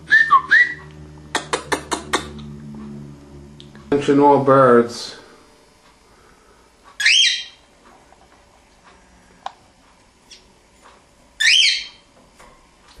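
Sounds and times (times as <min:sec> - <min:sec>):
cockatiel whistled calls: 0:00.1 - 0:00.8, 0:07.0 - 0:07.6, 0:11.4 - 0:12.0.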